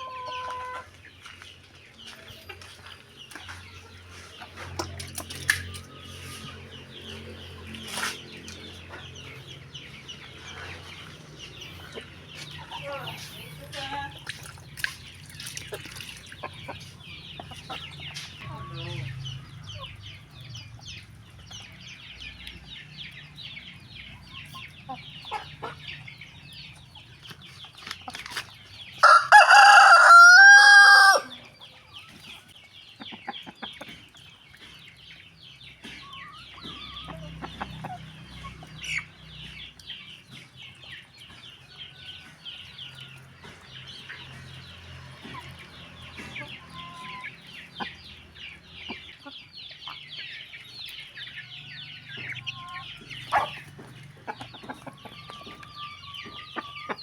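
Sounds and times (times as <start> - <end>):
chickens clucking: 0.0 - 57.0
rooster crowing: 29.0 - 31.3.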